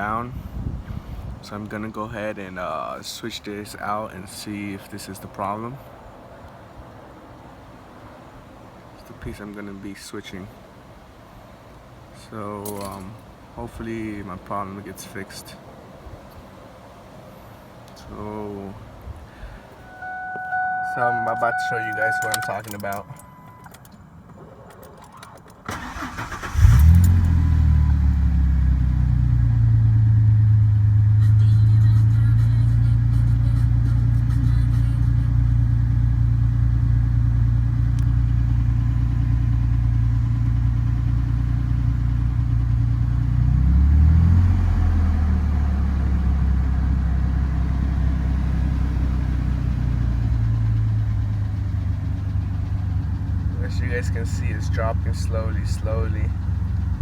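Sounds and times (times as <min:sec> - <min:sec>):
engine idling: 0:19.4 - 0:43.3, 0:45.6 - 0:57.0
truck engine starting: 0:19.4 - 0:57.0
engine revving: 0:25.7 - 0:31.6, 0:43.2 - 0:47.4.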